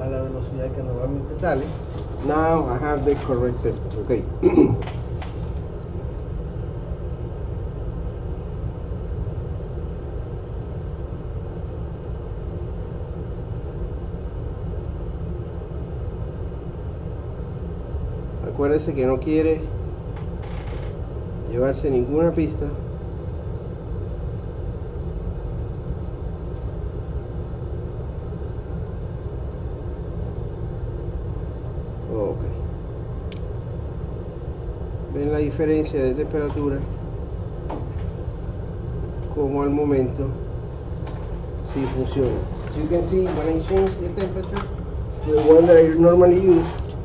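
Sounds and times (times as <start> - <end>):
hot air station blowing: 31.9 - 47.0.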